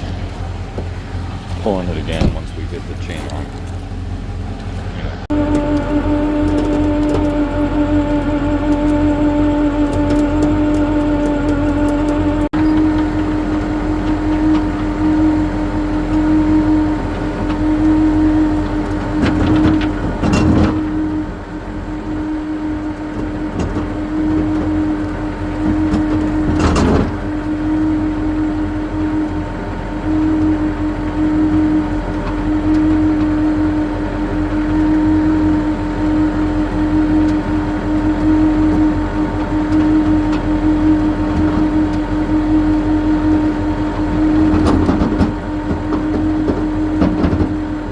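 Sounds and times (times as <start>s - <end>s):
truck engine droning: 0.0s - 47.9s
clunk: 2.1s - 2.6s.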